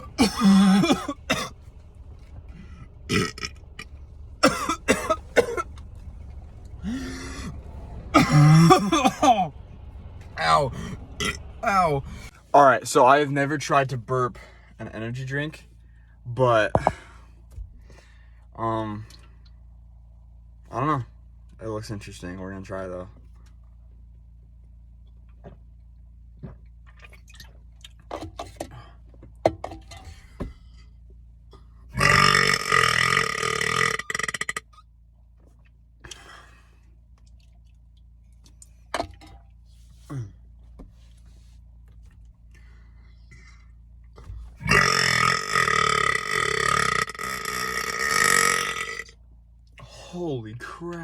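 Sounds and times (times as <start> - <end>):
man burping loudly: 0.0 - 1.5, 3.1 - 3.5, 4.4 - 5.7, 6.8 - 9.5, 10.7 - 12.0, 16.8 - 17.0, 32.0 - 34.7, 44.6 - 49.1.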